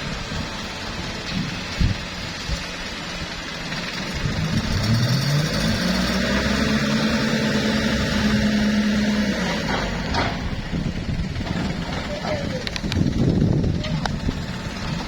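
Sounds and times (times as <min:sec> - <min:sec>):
heavy diesel engine revving: 0:00.0 - 0:15.0.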